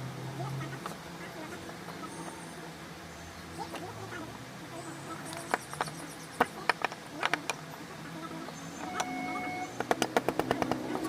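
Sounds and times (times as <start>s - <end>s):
sharp irregular taps: 5.4s - 7.6s, 9.8s - 11.0s
faint steady tone: 7.7s - 9.8s.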